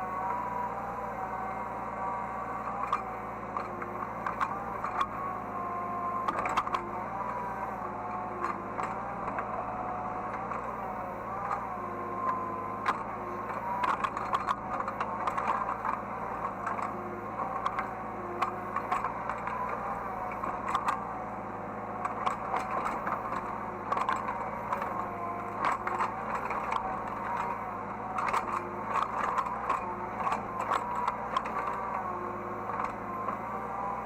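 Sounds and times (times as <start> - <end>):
excavator engine running: 0.0 - 34.0.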